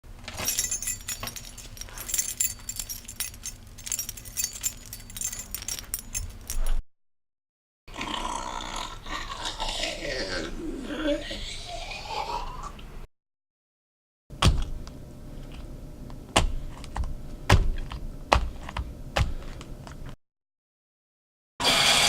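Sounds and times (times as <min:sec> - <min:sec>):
metallic jangling and clinking: 0:00.3 - 0:06.8
dense rustling: 0:00.4 - 0:06.8.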